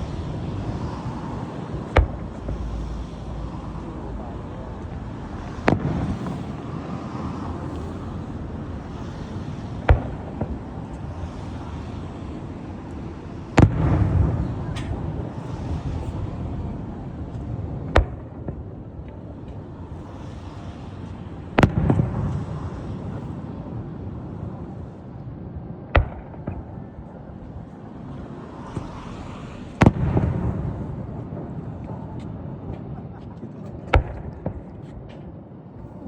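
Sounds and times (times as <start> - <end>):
fireworks bangs: 0.0 - 6.8, 7.5 - 18.9, 21.4 - 23.7, 26.0 - 28.0, 28.6 - 32.9, 33.8 - 35.0
low background rumble: 0.0 - 35.1
rolling rumble: 20.8 - 35.1
small firework pop: 33.9 - 35.2.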